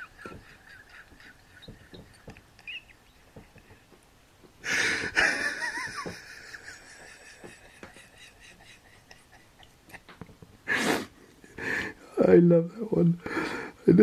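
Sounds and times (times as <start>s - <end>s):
man's wheezy laughter: 4.6s - 9.7s.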